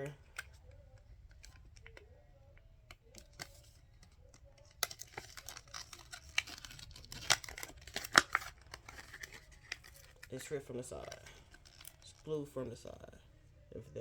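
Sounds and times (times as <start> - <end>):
plastic bag crinkling: 3.0 - 12.9.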